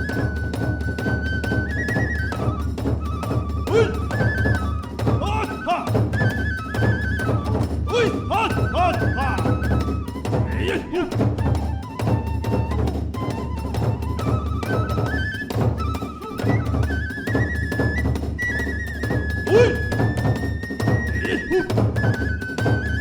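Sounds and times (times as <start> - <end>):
high bamboo flute melody: 0.0 - 23.0
big drum beat: 3.1 - 6.3, 19.5 - 20.4.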